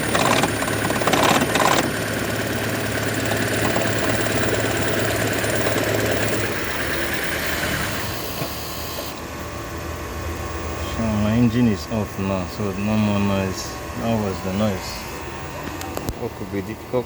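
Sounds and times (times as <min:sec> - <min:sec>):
car engine rattling: 0:00.0 - 0:09.1
steady low hum: 0:00.0 - 0:17.0.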